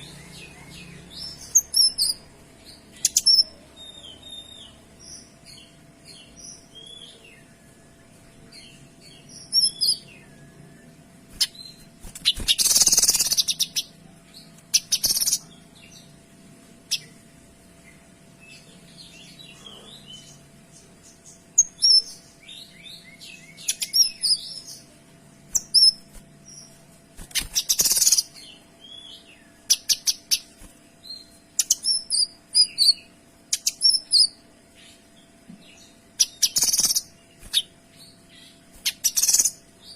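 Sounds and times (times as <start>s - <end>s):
songbird chirping and whistling: 36.2s - 37.8s.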